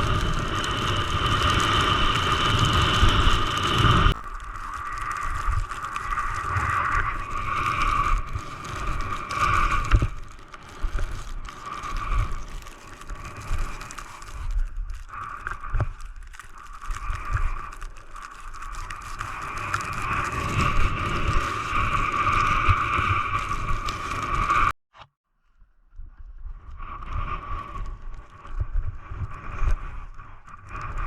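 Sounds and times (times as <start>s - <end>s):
wind buffeting microphone: 0.0s - 15.0s, 18.7s - 24.7s, 26.2s - 31.0s
skis scraping through wet snow: 0.0s - 24.7s.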